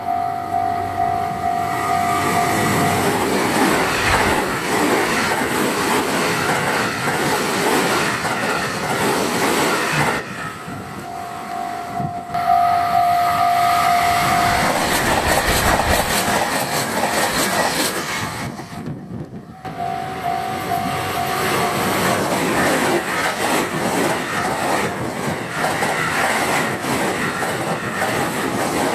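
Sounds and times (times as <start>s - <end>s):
level crossing warning bell: 0.0s - 3.3s, 11.0s - 14.6s, 19.6s - 22.0s
train wheels clattering over rails: 2.4s - 10.9s, 14.2s - 19.3s, 21.8s - 28.9s.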